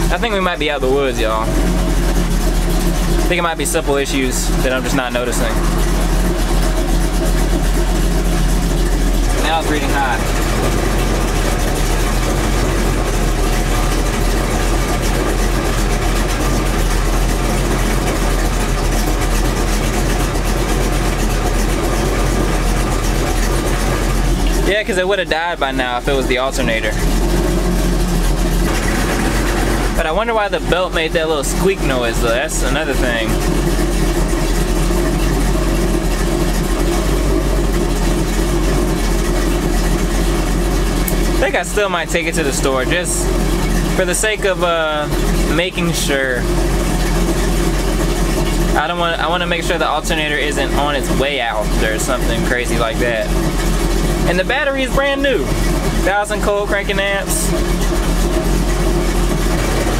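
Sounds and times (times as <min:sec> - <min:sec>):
car engine idling: 0:00.0 - 0:59.9.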